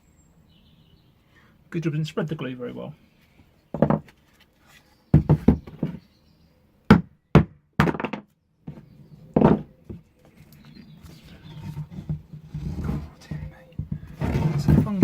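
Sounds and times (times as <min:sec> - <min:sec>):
scraping and shuffling: 0:03.2 - 0:06.0, 0:08.7 - 0:15.0
knocks on wooden mould: 0:03.7 - 0:04.1, 0:05.1 - 0:06.0, 0:06.9 - 0:08.3, 0:09.4 - 0:09.7.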